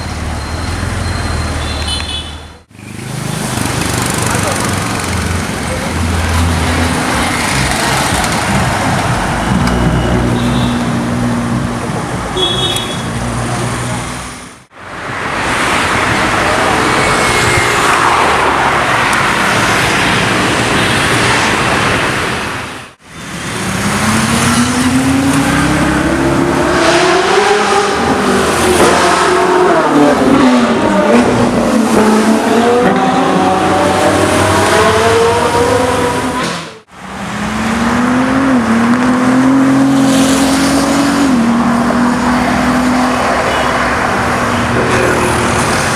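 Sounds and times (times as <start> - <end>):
supercar engines: 13.0 - 45.9
engine revving: 23.6 - 43.4.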